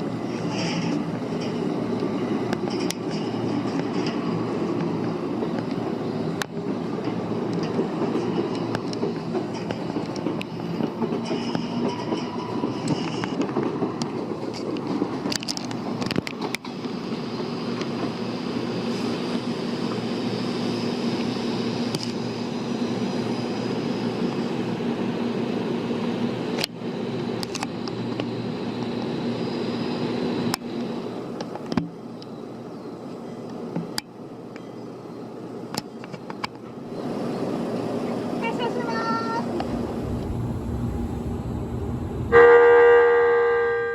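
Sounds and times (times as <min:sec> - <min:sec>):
wheels clicking over rail joints: 0:00.3 - 0:16.9
electric train running: 0:38.2 - 0:43.9.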